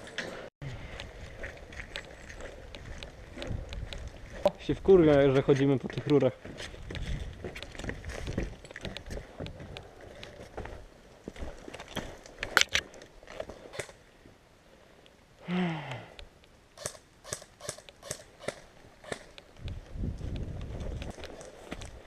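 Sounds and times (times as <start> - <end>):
footsteps clicking and scuffing: 0.2 - 13.8, 19.1 - 22.0.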